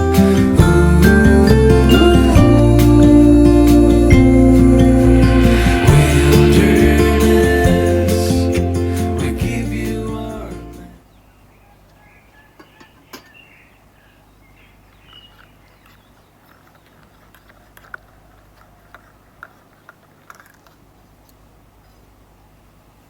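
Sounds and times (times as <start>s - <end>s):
background music: 0.0s - 11.0s
faint bird chirps: 11.0s - 17.0s.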